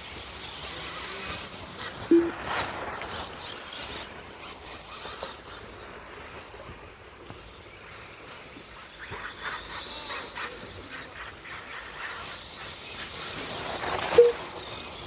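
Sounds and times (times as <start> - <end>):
electric rc trucks whining past: 0.0 - 6.5, 7.4 - 15.0
outdoor background noise: 0.0 - 15.0
short loud beep: 2.1 - 2.4.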